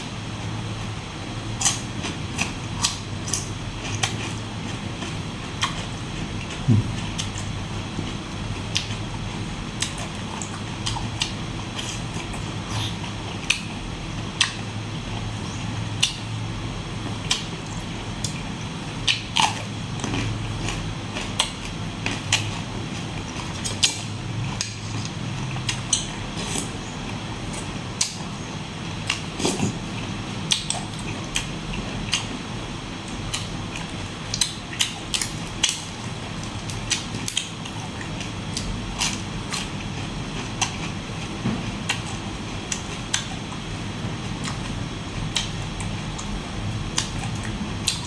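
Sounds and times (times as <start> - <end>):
steady low hum: 0.0 - 48.0
close chewing and biting: 33.2 - 43.5.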